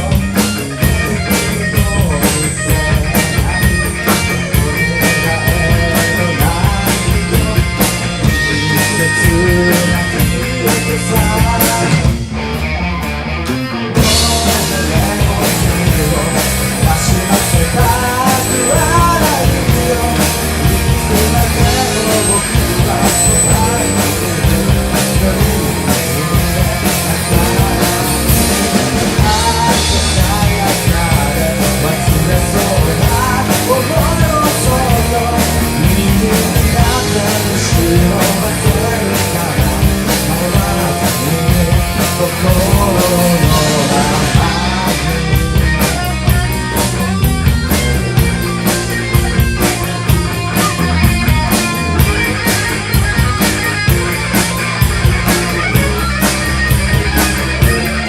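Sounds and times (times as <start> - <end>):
rock band playing: 0.0 - 58.0
melodic line: 14.0 - 58.0.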